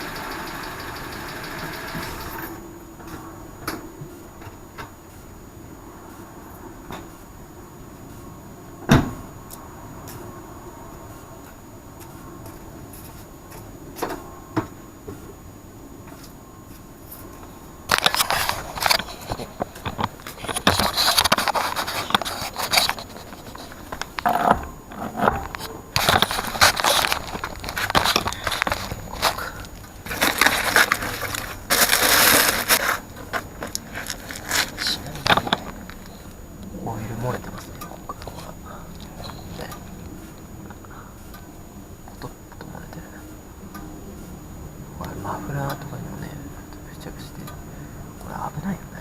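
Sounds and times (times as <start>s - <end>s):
low background hum: 0.0s - 49.0s
crinkling and scraping handling noises: 16.1s - 40.1s
loud rustle: 25.6s - 36.2s.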